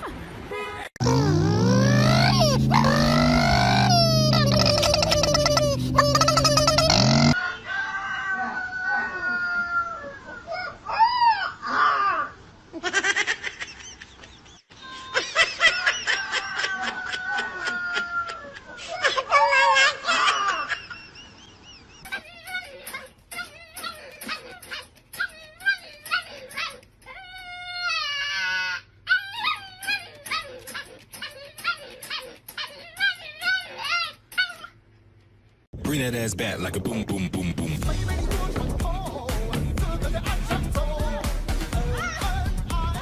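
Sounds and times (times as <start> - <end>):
dog whining: 1.0 - 7.4, 22.0 - 34.8
chickens squawking and clucking: 1.0 - 11.9
dog whimpering yips: 1.7 - 7.4, 22.1 - 34.8.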